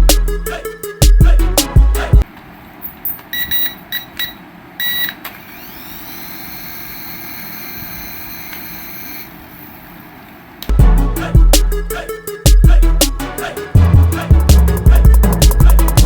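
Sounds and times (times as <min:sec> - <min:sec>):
short electronic beeps: 0:03.3 - 0:05.2
small electric motor whining: 0:05.4 - 0:09.7.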